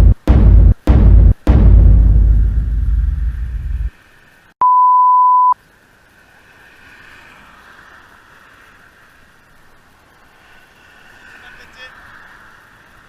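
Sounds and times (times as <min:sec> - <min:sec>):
deep boom: 0:00.0 - 0:03.9
faint outdoor background noise: 0:03.9 - 0:13.0
steady beep tone: 0:04.6 - 0:05.6.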